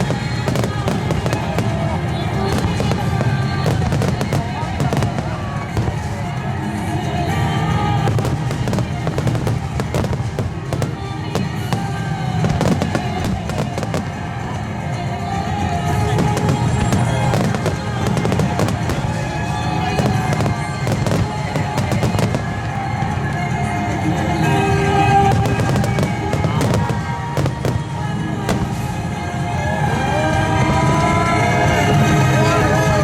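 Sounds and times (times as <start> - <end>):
fireworks bursting and crackling: 0.0 - 33.0
music playing: 0.0 - 33.0.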